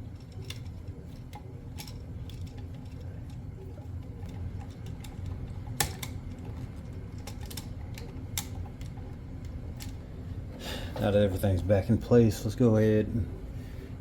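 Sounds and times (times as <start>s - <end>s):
steady low hum: 0.0s - 14.0s
hands clicking and tapping on outlet: 4.2s - 10.0s.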